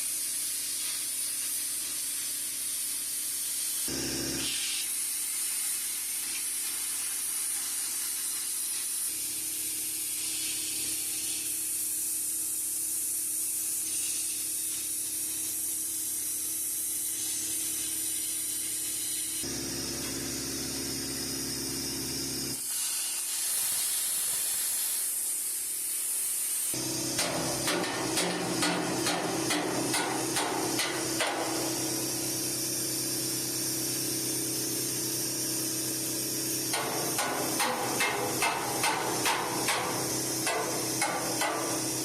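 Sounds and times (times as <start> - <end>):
power tool hissing: 0.1 - 42.0
sharp hammer-like knocks: 27.2 - 31.8, 36.7 - 41.8.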